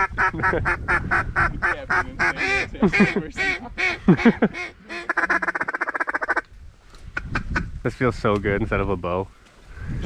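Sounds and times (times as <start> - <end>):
duck call quacks: 0.0 - 6.4
rapid duck call chatter: 0.9 - 6.4.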